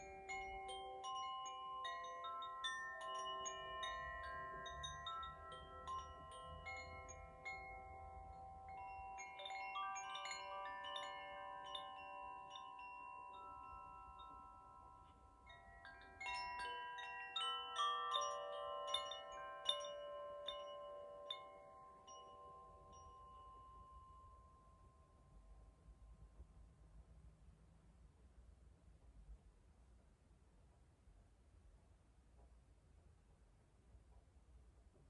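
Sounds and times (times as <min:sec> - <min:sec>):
wind chimes ringing: 0:00.0 - 0:25.9.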